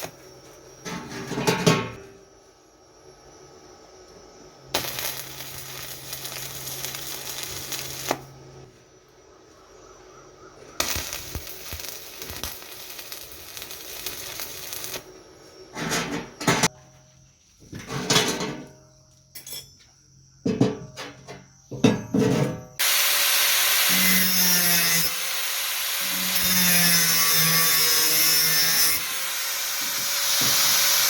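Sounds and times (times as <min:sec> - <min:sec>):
wire brush grinder scrubbing metal: 0:04.8 - 0:08.2, 0:10.8 - 0:15.0, 0:22.8 - 0:31.0.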